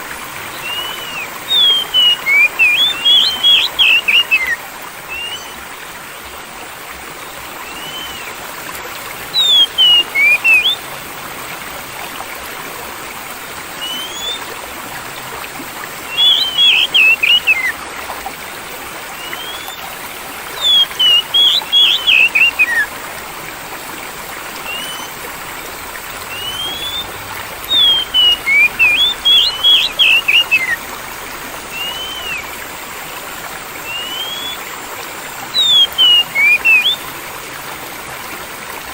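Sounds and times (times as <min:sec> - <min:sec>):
flowing water: 0:00.0 - 0:38.9
bird singing whistled phrases: 0:00.5 - 0:05.6, 0:07.6 - 0:08.4, 0:09.3 - 0:10.9, 0:13.8 - 0:14.5, 0:16.1 - 0:17.8, 0:19.2 - 0:22.9, 0:24.6 - 0:25.2, 0:26.3 - 0:30.8, 0:31.7 - 0:32.5, 0:33.8 - 0:34.6, 0:35.5 - 0:37.0.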